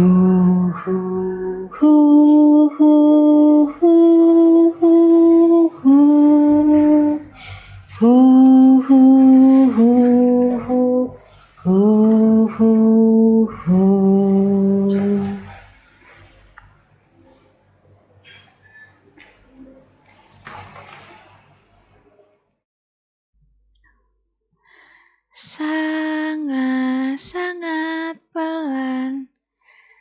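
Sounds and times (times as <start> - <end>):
person singing a melody: 0.0 - 15.7, 25.4 - 29.3.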